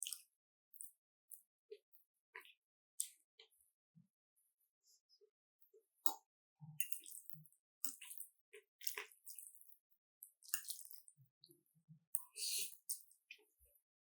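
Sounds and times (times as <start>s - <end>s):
wet chewing and mouth sounds: 6.8s - 11.1s.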